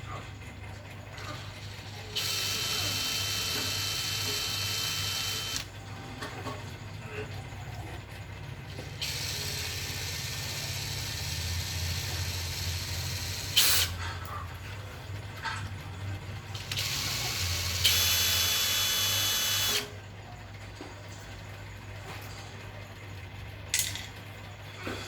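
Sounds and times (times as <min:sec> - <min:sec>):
power tool motor whirring: 0:01.7 - 0:05.7, 0:09.0 - 0:14.0, 0:16.6 - 0:20.0.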